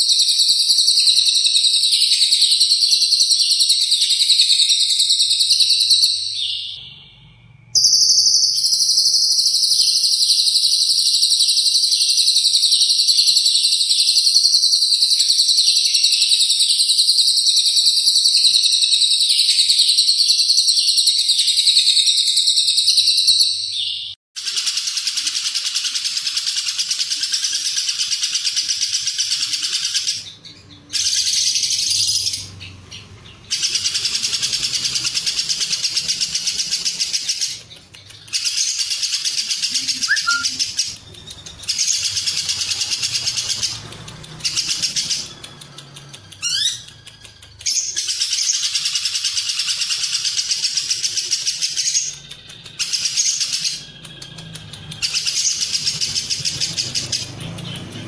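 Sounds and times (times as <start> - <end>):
bird shrill chattering: 38.3 - 41.0.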